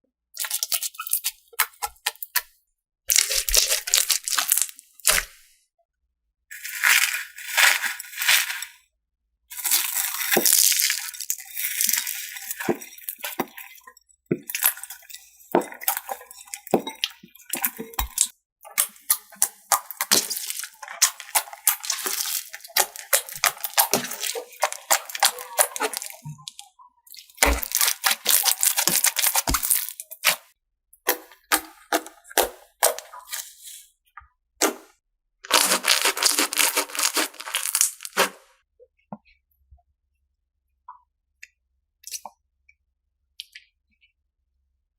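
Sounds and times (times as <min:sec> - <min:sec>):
wet slime squishes: 0:00.4 - 0:05.5, 0:06.5 - 0:08.8, 0:09.5 - 0:33.9, 0:34.6 - 0:34.9, 0:35.5 - 0:38.5
slime crackling and popping: 0:03.1 - 0:05.4, 0:06.5 - 0:08.8, 0:09.5 - 0:13.8, 0:14.4 - 0:30.5, 0:35.5 - 0:38.4.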